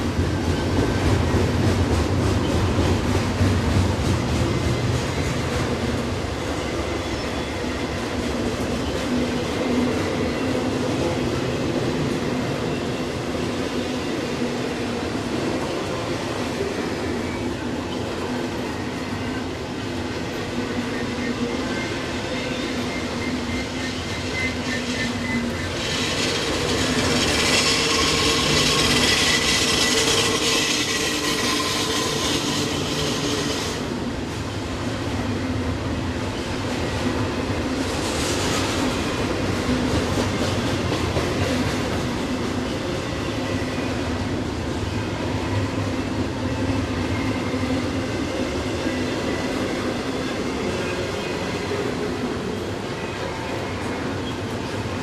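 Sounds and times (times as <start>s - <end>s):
freight train rumbling and clattering: 0.0s - 55.0s
high-pitched wheel squeal: 22.4s - 33.9s.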